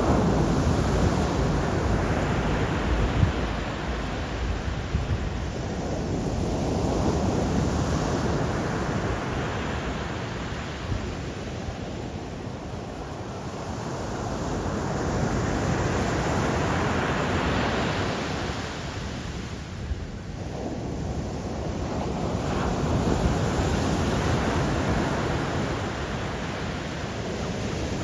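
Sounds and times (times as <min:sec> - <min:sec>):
waves rushing and washing in: 0:00.0 - 0:28.0.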